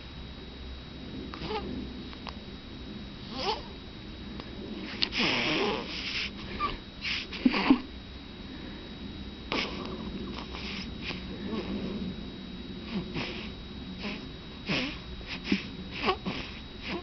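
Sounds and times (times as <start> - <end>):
baby snoring: 1.4 - 1.7, 3.3 - 3.7, 4.9 - 7.8, 9.5 - 11.7, 12.9 - 17.0.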